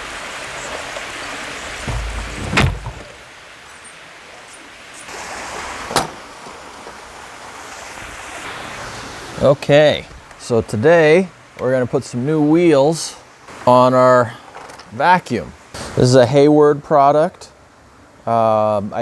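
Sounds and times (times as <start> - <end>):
background hiss: 0.0 - 19.0
sharp knock: 1.9 - 3.2.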